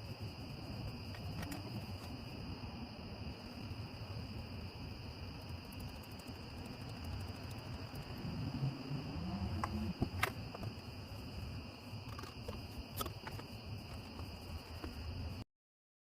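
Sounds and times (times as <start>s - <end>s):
low rumble: 1.7s - 12.1s
high-pitched insect chirring: 3.4s - 14.5s.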